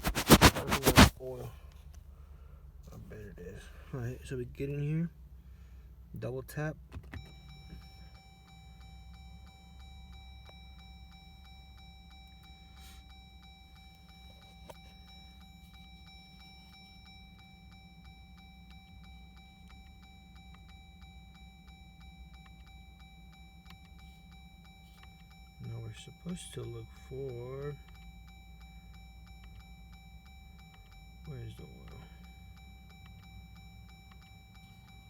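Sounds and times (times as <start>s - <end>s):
faint steady ticking: 7.2s - 35.0s.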